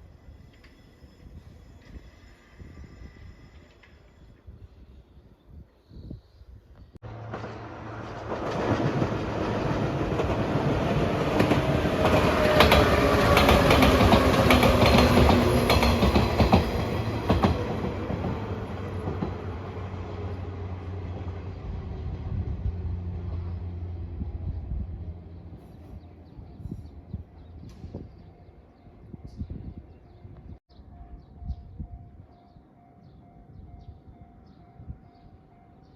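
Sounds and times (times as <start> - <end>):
train passing: 7.0 - 29.9.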